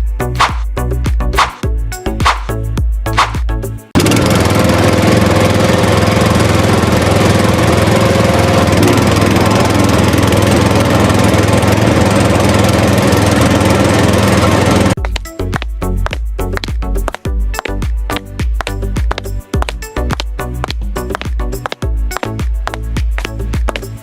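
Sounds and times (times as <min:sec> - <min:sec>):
motor running steadily: 0:04.0 - 0:24.0.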